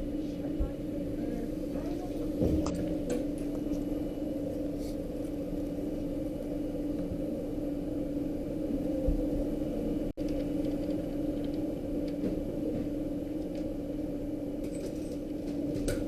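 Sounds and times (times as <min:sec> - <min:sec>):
steady mechanical hum: 0:00.0 - 0:16.0.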